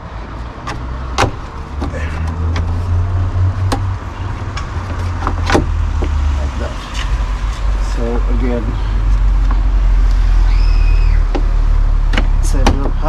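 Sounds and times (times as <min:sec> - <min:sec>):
car door parts clicking and knocking: 0:00.6 - 0:02.8, 0:03.6 - 0:06.2, 0:12.1 - 0:13.0.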